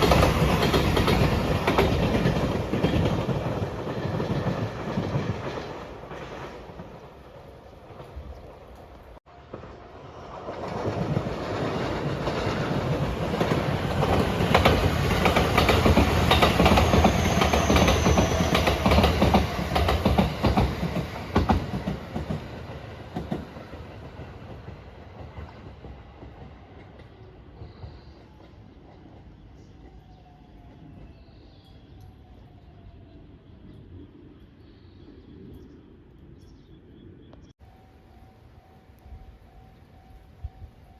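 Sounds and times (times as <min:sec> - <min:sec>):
wheels clacking over rail joints: 0:00.0 - 0:09.7, 0:10.4 - 0:27.2
electric train passing: 0:00.0 - 0:36.4, 0:37.6 - 0:40.9.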